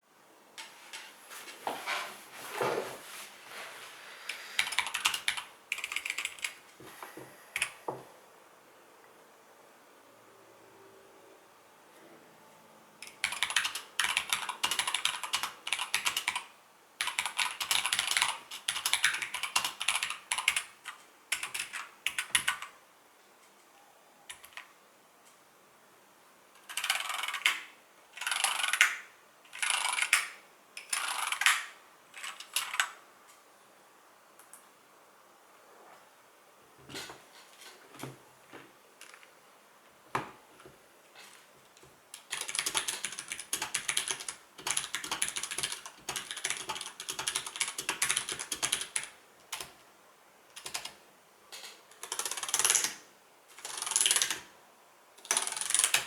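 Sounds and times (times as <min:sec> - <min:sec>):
typing on mechanical keyboard: 0:04.6 - 0:06.6, 0:07.6 - 0:07.8, 0:13.0 - 0:22.8, 0:24.3 - 0:24.7, 0:26.6 - 0:33.0, 0:42.2 - 0:49.8, 0:50.6 - 0:51.0, 0:51.9 - 0:53.0, 0:53.6 - 0:54.5, 0:55.2 - 0:56.0.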